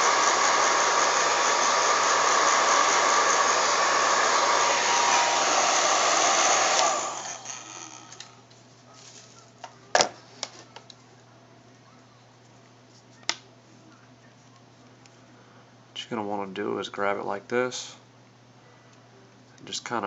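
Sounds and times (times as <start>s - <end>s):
hot-air blower rushing: 0.0s - 8.4s.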